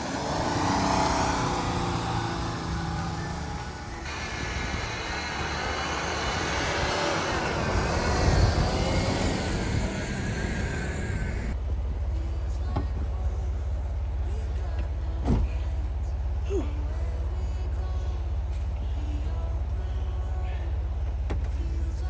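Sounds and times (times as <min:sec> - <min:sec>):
rushing snow noise: 0:00.0 - 0:11.6
car engine idling: 0:00.0 - 0:22.0
car engine working hard: 0:00.0 - 0:22.0.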